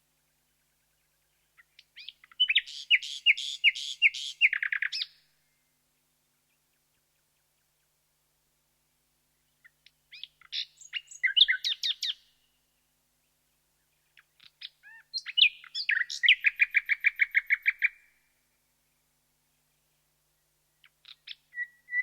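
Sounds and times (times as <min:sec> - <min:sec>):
nightingale singing: 0:00.5 - 0:05.6, 0:09.4 - 0:12.5, 0:13.8 - 0:18.1, 0:20.3 - 0:22.0.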